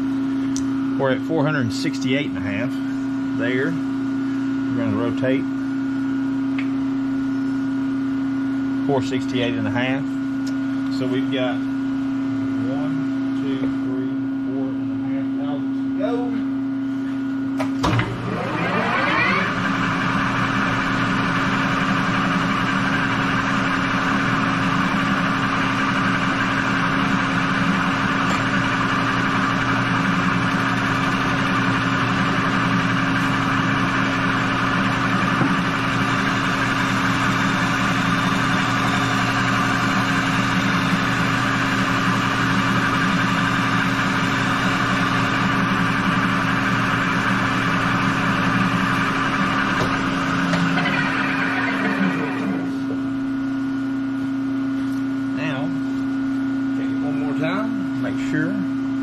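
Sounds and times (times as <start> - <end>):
metal lathe humming: 17.0 - 54.1.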